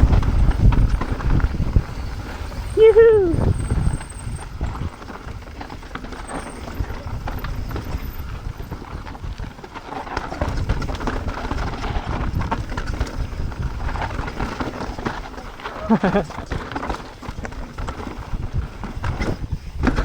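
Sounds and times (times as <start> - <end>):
bike tyres rumbling on dirt: 0.0 - 20.0
bike clattering over rocks: 8.9 - 20.0.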